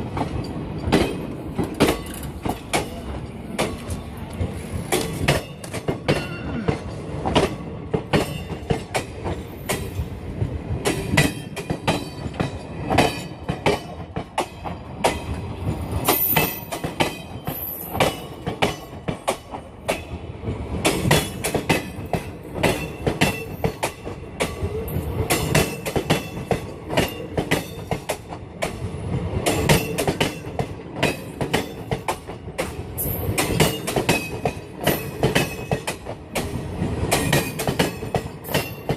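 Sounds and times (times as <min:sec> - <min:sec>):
train wheels clattering over rails: 0:00.0 - 0:38.9.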